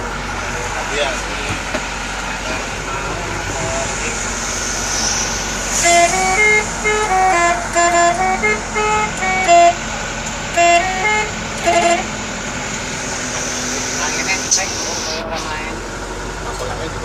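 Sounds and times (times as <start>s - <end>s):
bus engine hum: 0.0s - 17.0s
multi-tone air horn melody: 5.0s - 9.9s, 10.5s - 12.2s.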